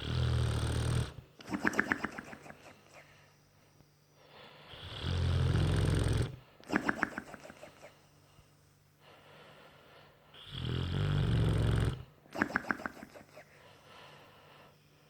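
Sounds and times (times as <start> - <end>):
dog snoring: 0.0 - 1.2, 4.7 - 6.4, 10.4 - 12.1.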